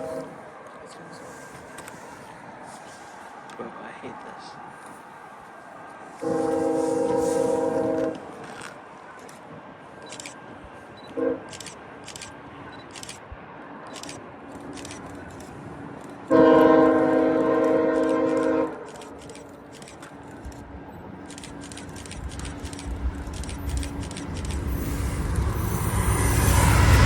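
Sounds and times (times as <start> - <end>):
locomotive air horn: 0.0 - 0.4, 6.2 - 8.4, 11.2 - 11.5, 16.3 - 18.9
low rumble of train: 0.0 - 27.0.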